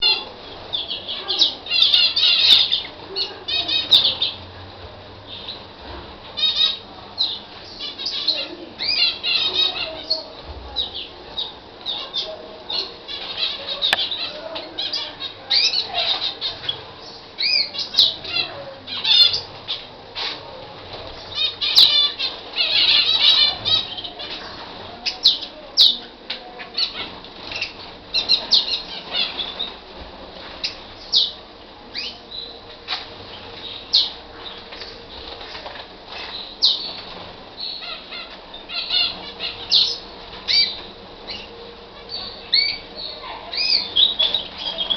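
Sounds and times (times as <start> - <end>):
canary singing: 0.0 - 4.6, 5.3 - 5.7, 6.4 - 44.9.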